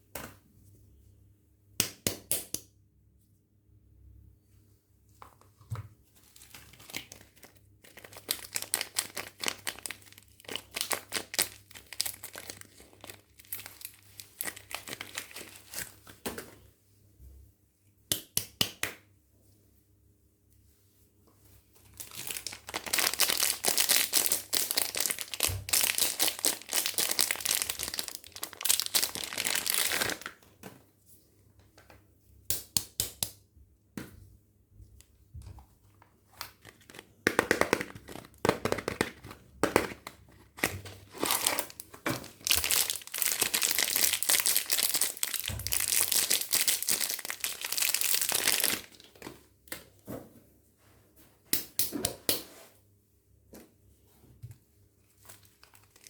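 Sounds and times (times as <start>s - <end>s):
packaging crinkling: 6.2s - 16.0s, 21.9s - 30.4s, 36.3s - 49.2s, 55.2s - 56.0s
packaging torn open: 6.4s - 15.9s, 22.0s - 30.3s, 36.4s - 49.1s, 55.4s - 56.0s.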